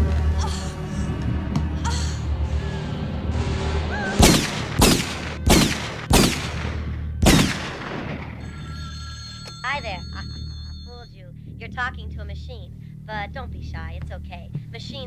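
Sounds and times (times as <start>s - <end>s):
low film score drone: 0.0s - 15.0s
pistol shots: 4.2s - 8.4s.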